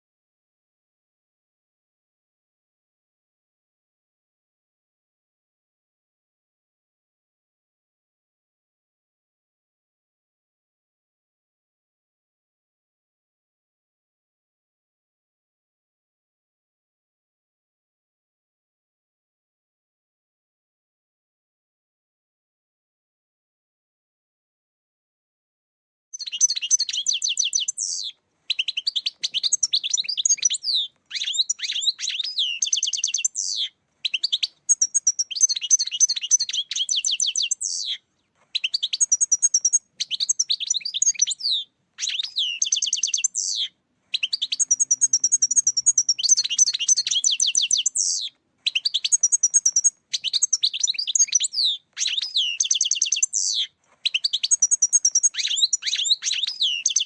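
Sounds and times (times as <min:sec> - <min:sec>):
goldfinch twittering song: 0:26.2 - 0:57.0.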